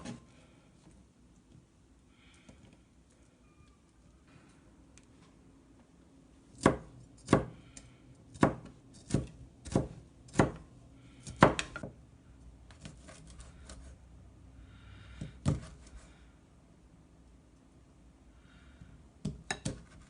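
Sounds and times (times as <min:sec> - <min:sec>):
knife chopping on cutting board: 0:06.5 - 0:07.6, 0:08.3 - 0:11.9, 0:15.2 - 0:15.9, 0:19.2 - 0:20.0.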